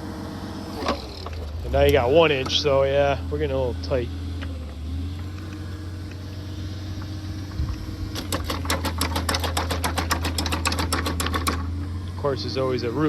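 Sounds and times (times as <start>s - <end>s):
auger rig engine running: 0.0s - 13.0s
rapid clatter of clicks: 8.2s - 11.7s.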